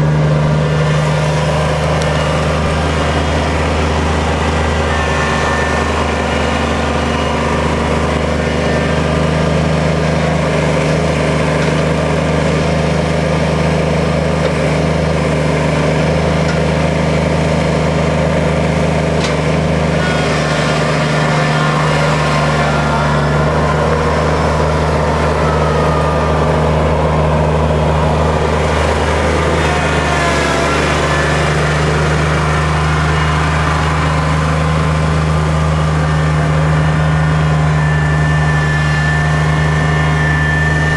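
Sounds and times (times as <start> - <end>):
tractor diesel engine running: 0.0 - 40.9
faint whines: 1.5 - 10.0, 17.8 - 40.9.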